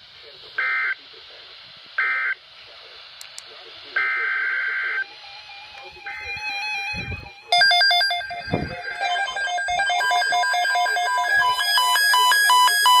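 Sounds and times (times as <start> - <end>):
faint steady hum: 0.0 - 13.0
electronic beeping melody: 5.4 - 13.0.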